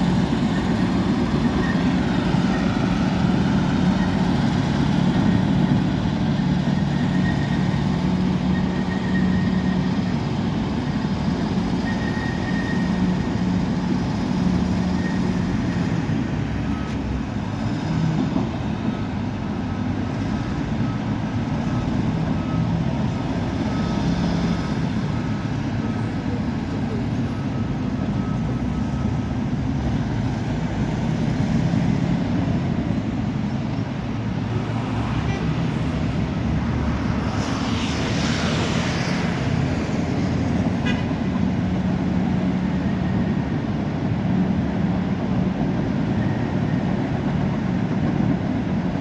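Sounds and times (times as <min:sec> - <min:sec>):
diesel engine running under work: 0:00.0 - 0:49.0.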